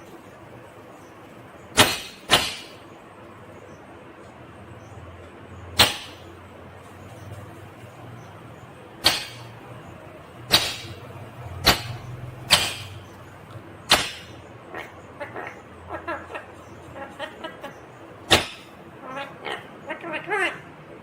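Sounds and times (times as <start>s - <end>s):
parakeet chattering calls: 8.2s - 20.6s.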